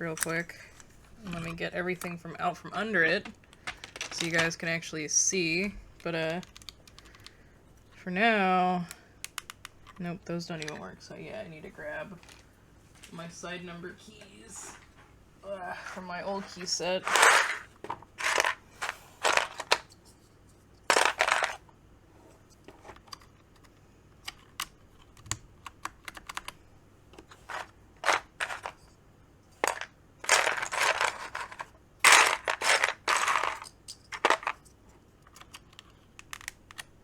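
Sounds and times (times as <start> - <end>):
keyboard keycaps clicking and clattering: 2.8 - 7.4, 8.8 - 10.9, 20.9 - 21.7, 22.7 - 28.8, 29.6 - 37.0.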